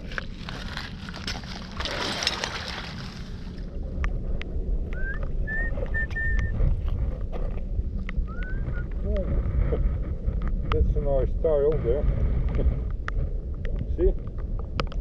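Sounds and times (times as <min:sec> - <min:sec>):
wind buffeting microphone: 0:00.0 - 0:15.0
short rising whistle: 0:05.0 - 0:06.6.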